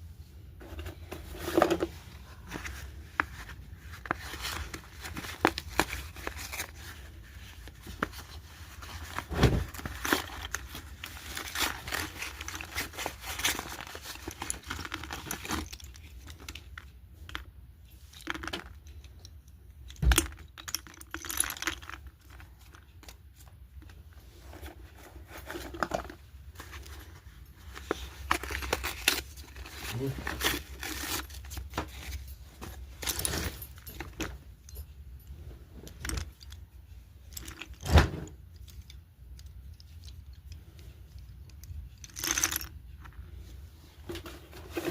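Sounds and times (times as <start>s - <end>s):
packaging crinkling and tearing: 27.8s - 32.1s.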